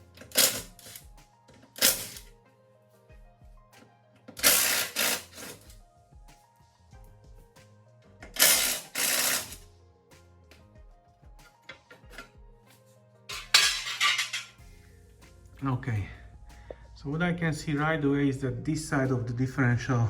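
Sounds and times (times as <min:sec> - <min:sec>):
background music with steady beat: 0:00.0 - 0:20.0
rasping hand tool: 0:04.4 - 0:05.7, 0:08.4 - 0:09.6.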